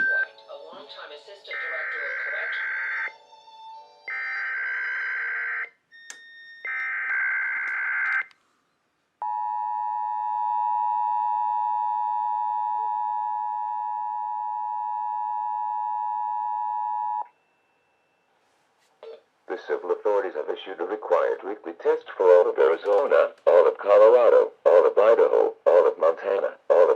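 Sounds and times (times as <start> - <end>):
two-tone attention signal: 0.0 - 0.3.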